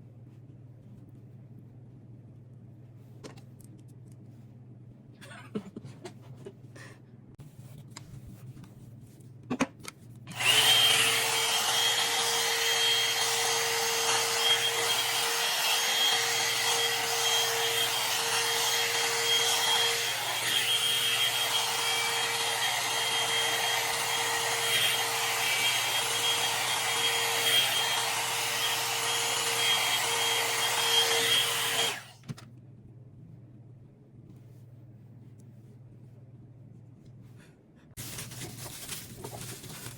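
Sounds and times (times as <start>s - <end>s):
hair dryer running: 10.3s - 32.2s.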